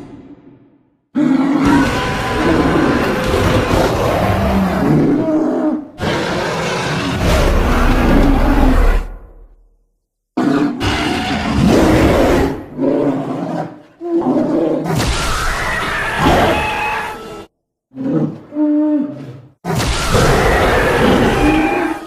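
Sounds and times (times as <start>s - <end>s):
roaring and grunting voice: 1.2s - 9.1s, 10.4s - 15.0s.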